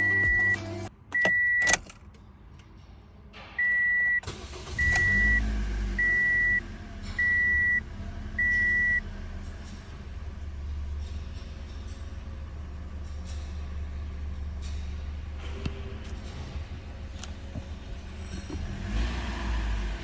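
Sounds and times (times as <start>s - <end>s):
electronic warning beeps: 0.0s - 1.8s, 3.6s - 4.2s, 4.8s - 5.4s, 6.0s - 6.6s, 7.2s - 7.8s, 8.4s - 9.0s.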